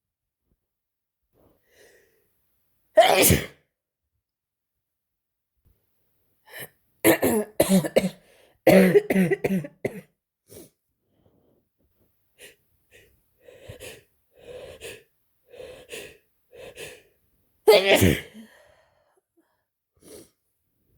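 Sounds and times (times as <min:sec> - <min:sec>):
person coughing: 0:03.0 - 0:03.5, 0:07.1 - 0:10.1, 0:17.7 - 0:18.4.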